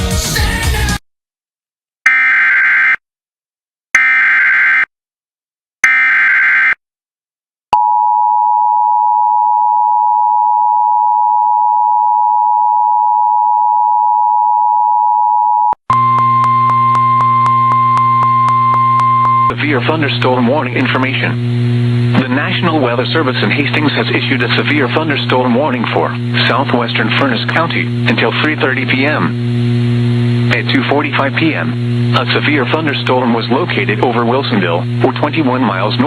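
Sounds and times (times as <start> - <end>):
music: 0.0 - 1.0
buzzing hum: 15.9 - 36.0.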